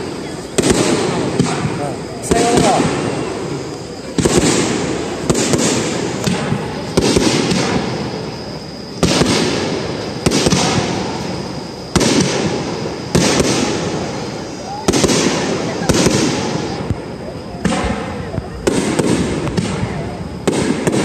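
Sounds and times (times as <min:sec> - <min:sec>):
fireworks bursting with crackling tail: 0:00.0 - 0:21.0.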